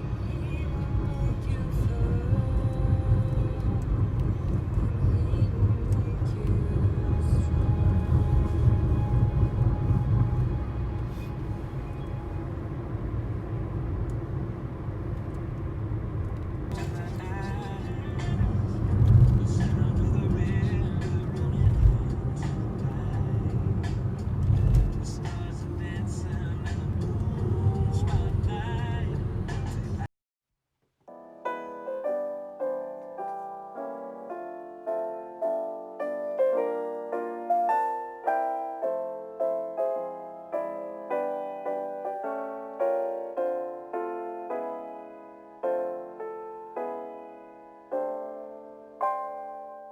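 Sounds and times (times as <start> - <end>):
soft piano melody: 0.0 - 15.9, 16.6 - 29.5, 31.1 - 49.9
vehicle rumble on the move: 0.0 - 30.1.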